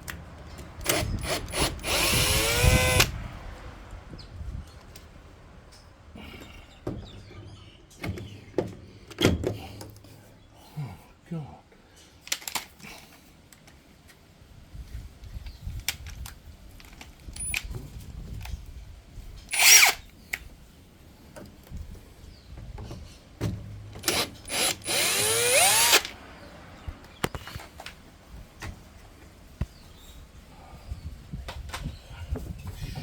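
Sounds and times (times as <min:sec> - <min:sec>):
power drill whirring: 0:00.8 - 0:03.2, 0:19.5 - 0:20.0, 0:24.0 - 0:26.2
tools and parts clicking: 0:12.2 - 0:12.8.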